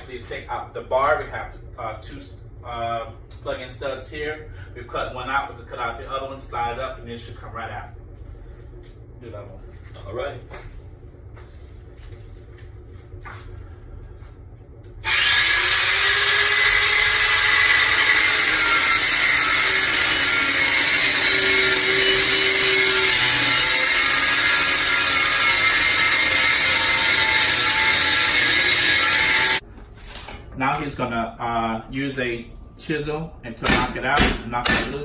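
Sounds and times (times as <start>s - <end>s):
power saw cutting wood: 15.0s - 29.6s.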